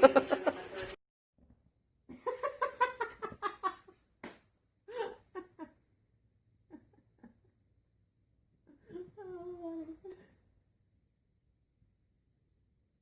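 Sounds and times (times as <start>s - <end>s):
person giggling: 0.0s - 0.7s.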